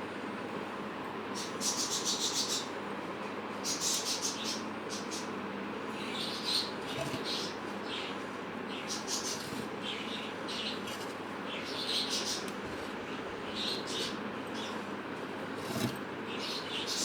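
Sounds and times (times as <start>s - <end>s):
birds chirping: 5.9s - 14.8s, 15.7s - 17.0s.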